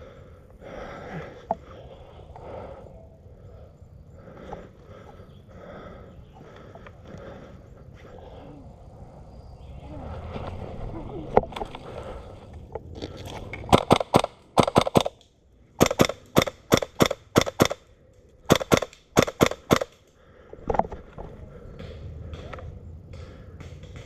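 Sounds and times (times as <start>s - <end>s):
airsoft gun shots: 13.7s - 15.2s, 15.8s - 17.8s, 18.5s - 19.9s.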